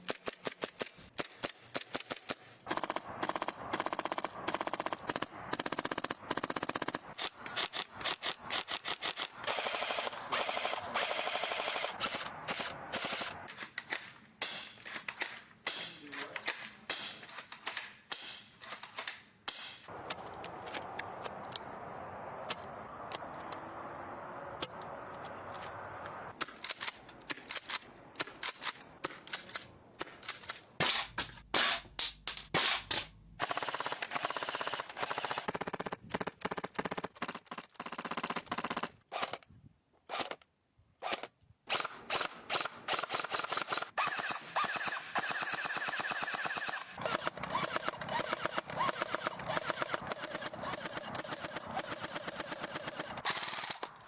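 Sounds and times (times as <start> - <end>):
automatic gunfire: 41.8 - 53.8.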